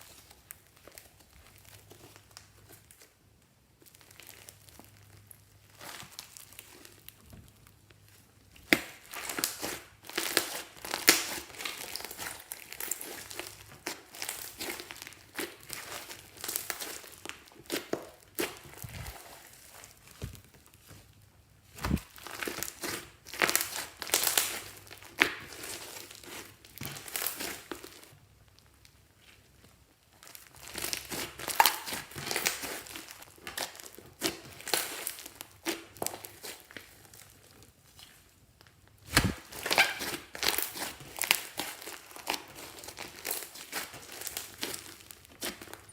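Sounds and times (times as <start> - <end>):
slime crackling and popping: 0.0 - 45.9
sharp slime snaps: 39.1 - 39.5.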